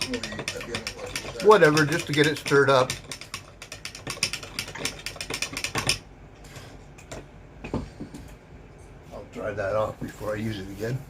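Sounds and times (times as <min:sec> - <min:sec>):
tool clicking against cup: 0:00.0 - 0:06.0.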